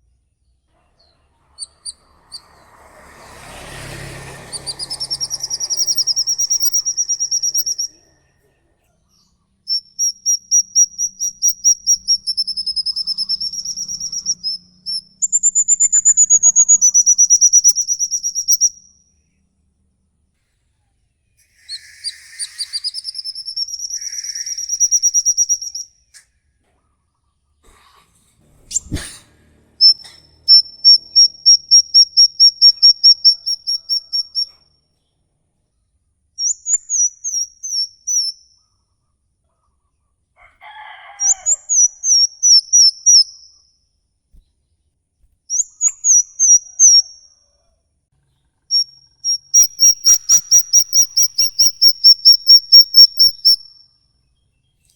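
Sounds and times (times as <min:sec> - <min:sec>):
songbird singing high trills: 0:04.4 - 0:08.3, 0:09.2 - 0:19.0, 0:21.5 - 0:26.2, 0:29.8 - 0:34.6, 0:36.4 - 0:38.8, 0:41.2 - 0:43.6, 0:45.5 - 0:47.2, 0:48.7 - 0:53.7.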